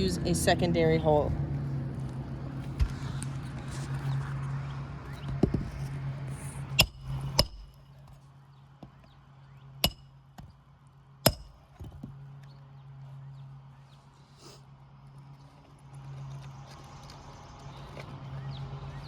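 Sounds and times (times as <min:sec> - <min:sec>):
steady low hum: 0:00.0 - 0:19.0
hammer striking metal: 0:06.8 - 0:07.8, 0:09.8 - 0:10.2, 0:11.3 - 0:11.6.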